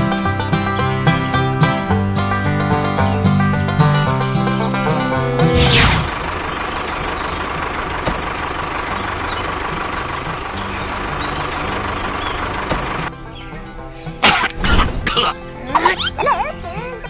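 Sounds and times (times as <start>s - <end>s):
engine running steadily: 0.0s - 17.0s
falling whoosh: 5.5s - 6.3s.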